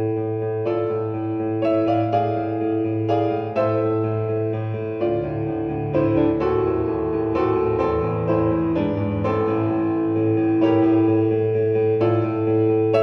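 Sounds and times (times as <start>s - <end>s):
gentle piano music: 0.0s - 13.0s.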